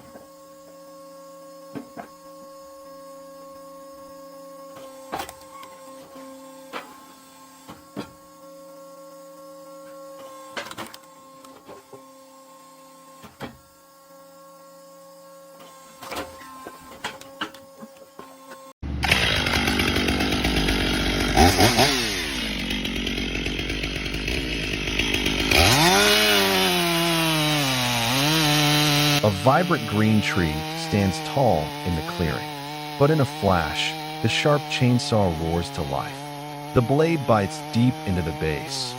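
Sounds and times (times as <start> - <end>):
electric motor hum: 0.0 - 38.9
chainsaw revving: 18.8 - 38.9.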